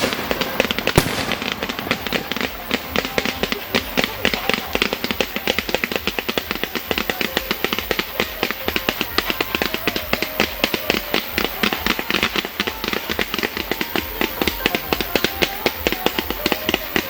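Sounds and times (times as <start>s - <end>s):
fireworks crackling: 0.0s - 17.0s.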